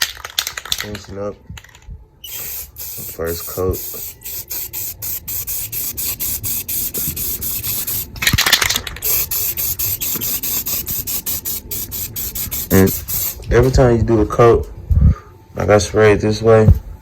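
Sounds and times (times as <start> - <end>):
spray paint can hissing in bursts: 2.2 - 13.8.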